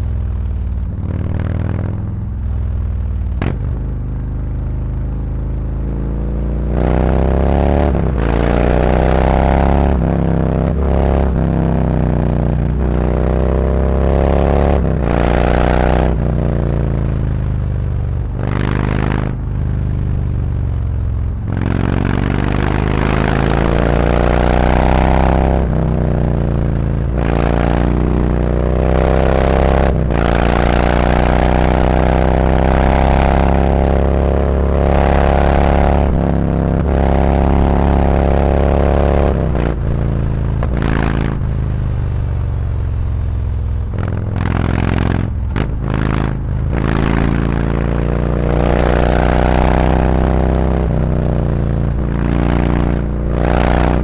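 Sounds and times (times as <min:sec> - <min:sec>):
motorcycle engine accelerating: 0:00.0 - 0:54.0.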